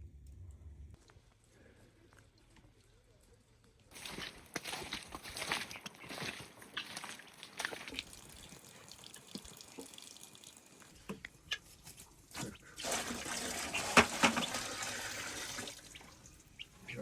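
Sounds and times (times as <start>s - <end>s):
water pouring: 3.9s - 17.0s.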